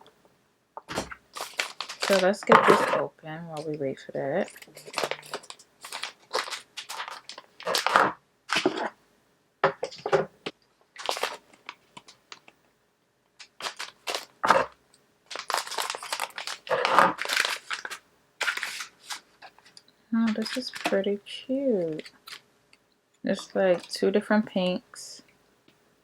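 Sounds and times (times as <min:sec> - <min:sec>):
packaging torn and crinkled: 0:01.3 - 0:03.0, 0:04.5 - 0:08.9, 0:11.0 - 0:12.5, 0:13.4 - 0:21.1, 0:21.9 - 0:22.4.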